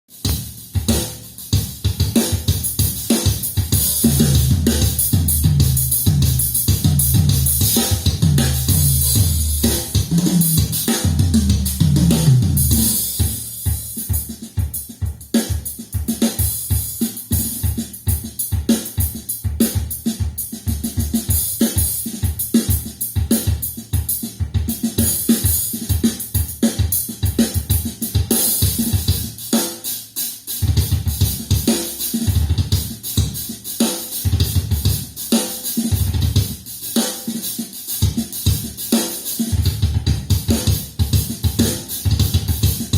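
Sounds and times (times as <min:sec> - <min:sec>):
drums playing: 0:00.1 - 0:42.9
bass guitar: 0:04.0 - 0:12.9.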